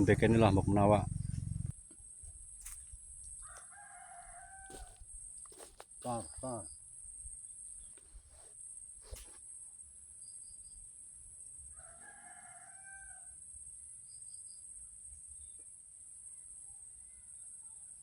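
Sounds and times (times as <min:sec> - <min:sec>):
faint rooster crowing: 0:03.3 - 0:05.1, 0:11.7 - 0:13.4.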